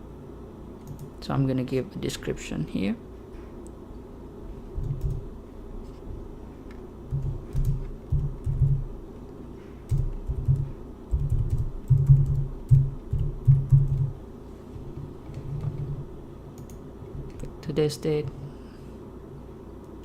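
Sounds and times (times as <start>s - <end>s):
keyboard typing: 4.8s - 5.2s, 7.1s - 8.9s, 9.9s - 14.2s.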